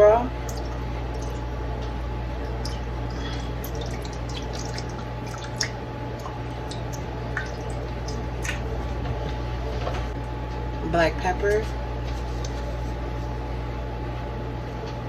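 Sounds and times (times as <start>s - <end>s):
steady low hum: 0.0s - 15.0s
liquid dripping and splashing: 0.4s - 9.4s, 12.3s - 12.7s.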